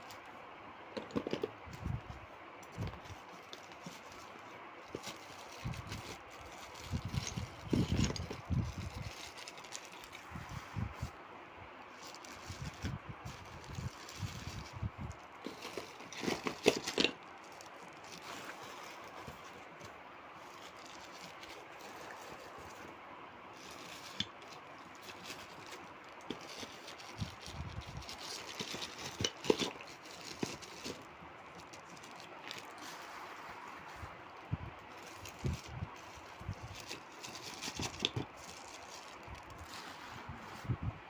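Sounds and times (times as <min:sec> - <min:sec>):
parcel packaging rustling: 0:01.0 - 0:11.2, 0:11.9 - 0:40.7
sharp clicks and scrapes: 0:23.8 - 0:31.0.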